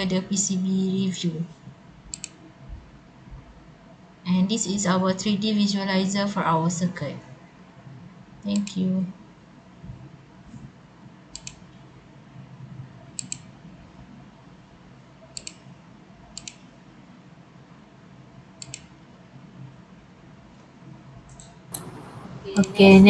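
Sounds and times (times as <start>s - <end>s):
computer mouse double clicks: 21.8s - 22.2s
low steady hum: 21.8s - 23.0s.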